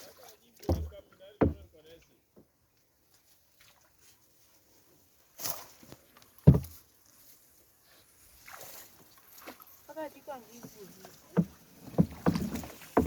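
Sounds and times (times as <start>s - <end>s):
heavy thump: 0.7s - 1.7s.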